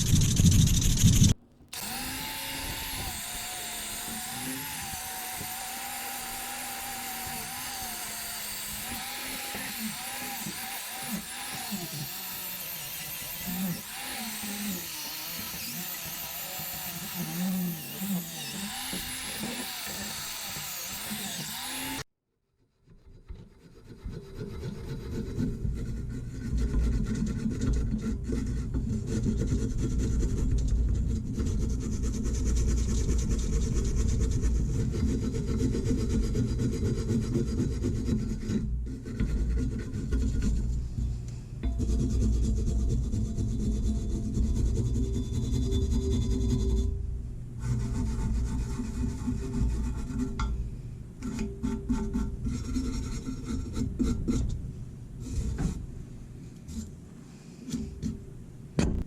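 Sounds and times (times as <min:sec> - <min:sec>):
high-pitched power tool: 0:00.0 - 0:22.1.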